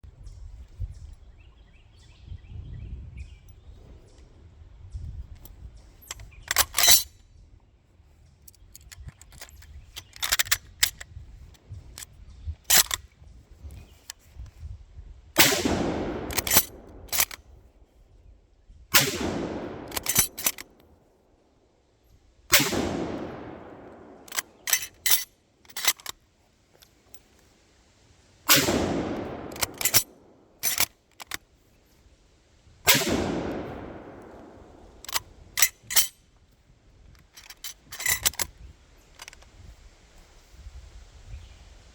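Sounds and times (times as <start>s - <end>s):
rifle bolt metallic clicks: 5.1s - 7.1s, 8.5s - 13.1s, 15.4s - 17.4s, 19.0s - 20.9s, 22.5s - 26.2s, 28.5s - 31.4s, 32.9s - 36.2s, 37.1s - 39.5s
rifle shots echoing: 15.4s - 17.4s, 19.0s - 20.8s, 22.5s - 25.2s, 28.5s - 30.9s, 32.9s - 36.1s.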